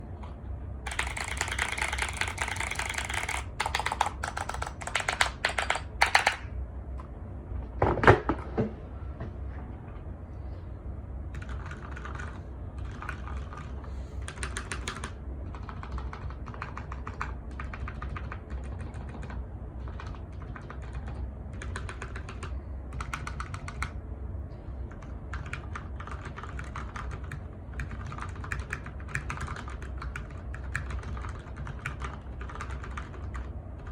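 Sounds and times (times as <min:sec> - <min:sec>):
typing on mechanical keyboard: 0:00.9 - 0:06.5, 0:11.3 - 0:24.0, 0:24.9 - 0:33.9.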